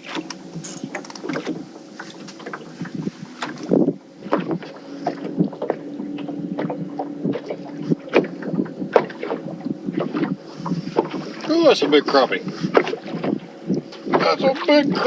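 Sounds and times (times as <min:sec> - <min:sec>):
knocks and clicks of gear: 0:00.0 - 0:04.6
steady low hum: 0:00.0 - 0:15.0.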